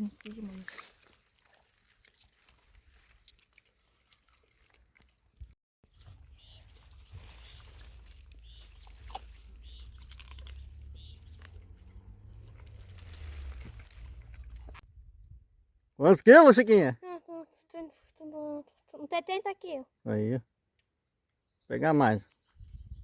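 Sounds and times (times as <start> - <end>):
chewing and crunching food: 0.0 - 14.8
low rumble: 6.9 - 15.6.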